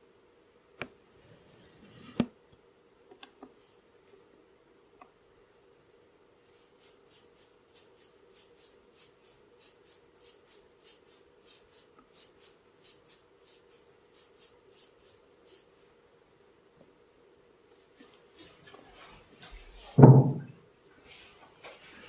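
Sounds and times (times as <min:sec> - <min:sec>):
faint steady hum: 0:00.0 - 0:22.0
rubbing strokes of head massage: 0:06.4 - 0:16.0.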